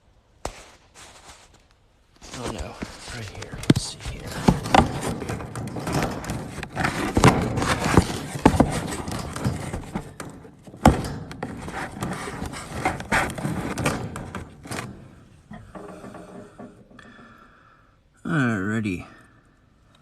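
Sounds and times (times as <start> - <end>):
phone handling knocks and scrapes: 2.2 - 17.0.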